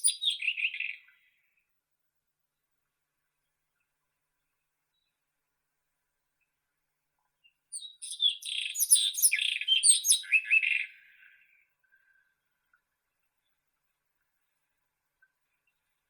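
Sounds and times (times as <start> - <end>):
robin singing: 0.0 - 1.4, 7.4 - 11.7.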